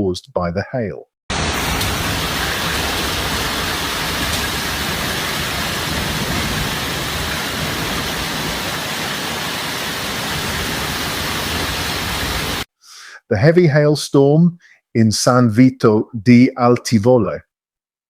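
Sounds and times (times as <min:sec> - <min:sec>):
heavy rain downpour: 0:01.3 - 0:12.7.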